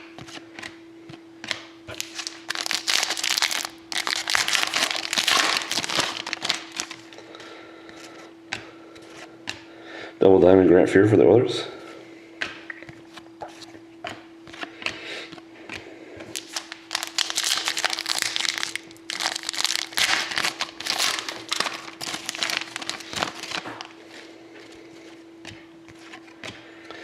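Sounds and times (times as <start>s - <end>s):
faint steady hum: 0.0s - 27.0s
wrapper crinkling: 1.9s - 7.2s, 16.3s - 23.9s
cards rustling and tapping: 12.4s - 23.9s.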